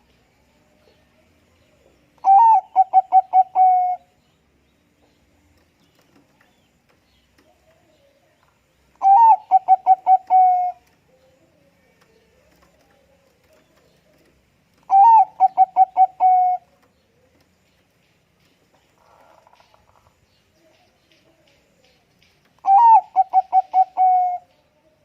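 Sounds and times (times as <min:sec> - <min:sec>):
dove cooing song: 0:02.2 - 0:04.2, 0:09.0 - 0:17.5, 0:22.6 - 0:25.0.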